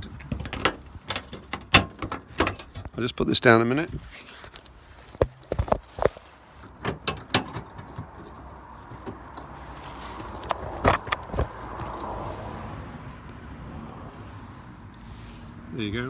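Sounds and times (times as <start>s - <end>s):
metallic clicks and knocks: 0.0s - 3.0s, 4.6s - 9.5s.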